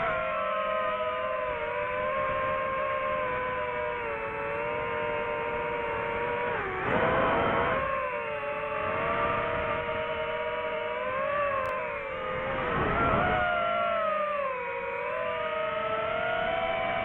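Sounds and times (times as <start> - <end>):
drone propellers whining: 0.0 - 17.0.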